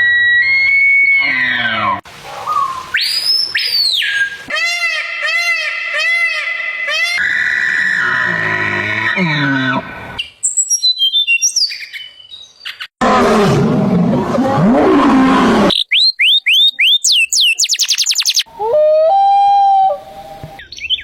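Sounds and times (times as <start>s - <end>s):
bird whistles and fast trill: 10.2s - 12.4s, 15.7s - 18.5s
large animal growling roar: 13.0s - 15.7s
short high bird chirps: 15.7s - 18.5s.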